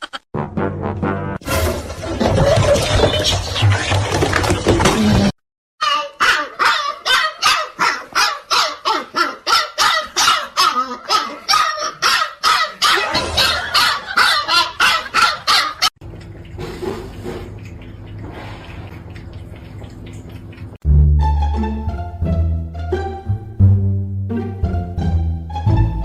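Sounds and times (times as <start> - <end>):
dog barking: 5.8 - 15.9.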